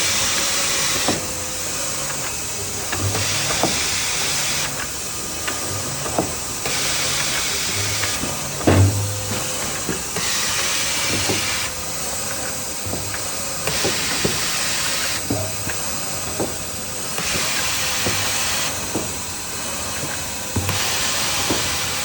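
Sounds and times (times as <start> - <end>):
band saw cutting machine hiss: 0.0 - 22.0
machine knock: 2.8 - 11.7.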